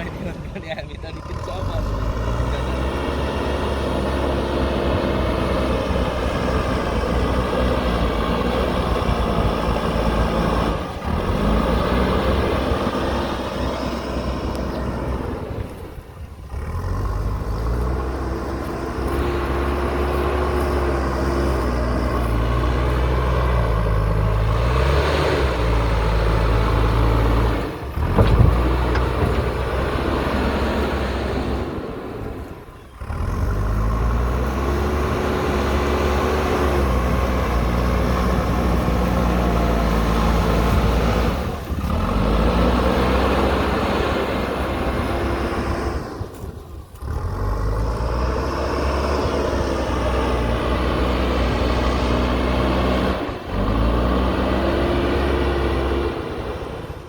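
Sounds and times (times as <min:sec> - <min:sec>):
diesel engine revving: 0:00.0 - 0:57.0.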